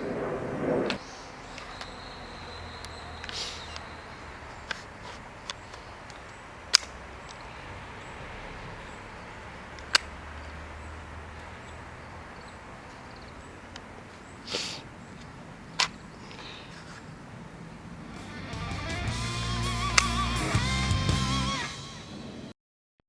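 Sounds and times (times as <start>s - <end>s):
soft burst: 0.0s - 2.0s
faint clicks: 0.0s - 18.5s
outdoor background noise: 0.0s - 22.6s.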